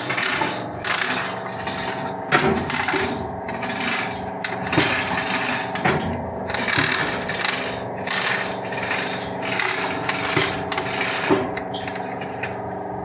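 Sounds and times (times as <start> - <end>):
metal clinking and scraping: 0.0 - 12.6.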